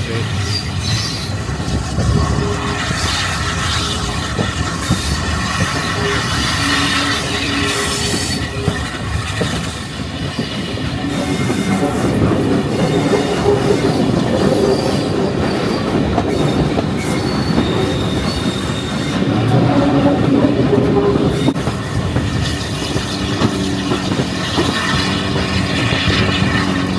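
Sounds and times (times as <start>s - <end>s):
train wheels clattering on rails: 0.0s - 26.9s
thin wheel squeals: 4.8s - 9.2s, 12.7s - 20.1s.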